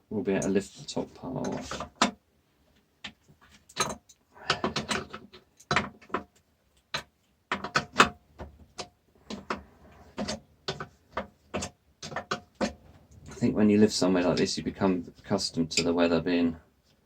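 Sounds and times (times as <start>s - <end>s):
hand tools clicking and clunking: 0.3s - 2.2s, 3.0s - 13.5s.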